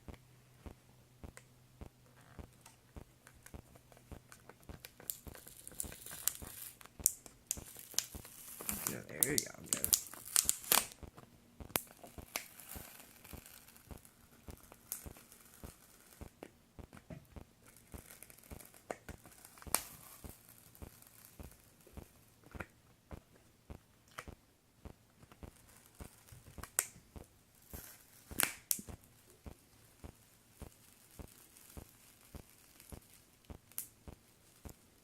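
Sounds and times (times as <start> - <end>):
small clicks and crackles: 0.1 - 35.0.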